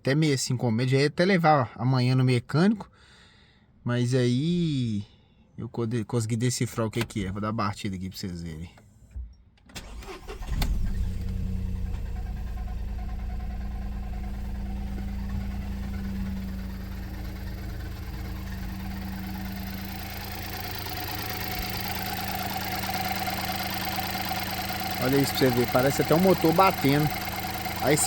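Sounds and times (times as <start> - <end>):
car engine starting and idling: 8.8 - 28.0.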